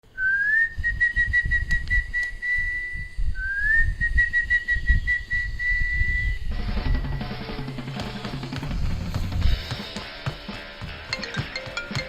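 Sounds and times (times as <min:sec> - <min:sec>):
whistled birdsong: 0:00.1 - 0:08.6
music: 0:06.5 - 0:12.0.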